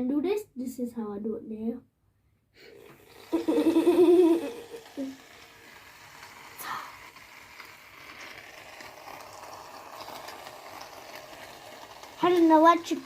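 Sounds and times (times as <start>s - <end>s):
aerosol foam hissing: 2.6s - 9.5s.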